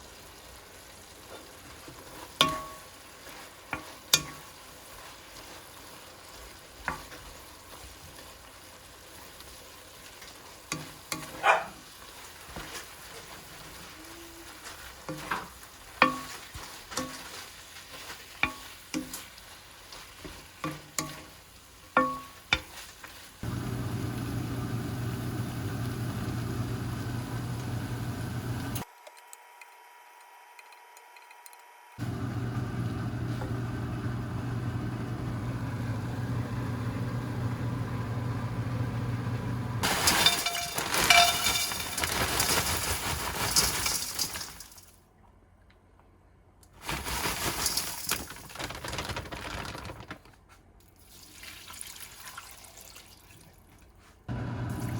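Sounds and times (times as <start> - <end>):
appliance humming: 23.4 - 41.3, 54.3 - 54.9
dishes and utensils clinking: 39.8 - 42.2.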